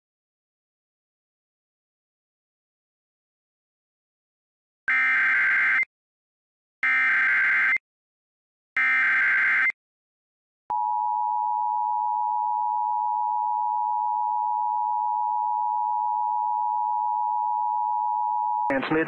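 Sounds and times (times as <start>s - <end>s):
steady attention tone: 10.7s - 19.0s.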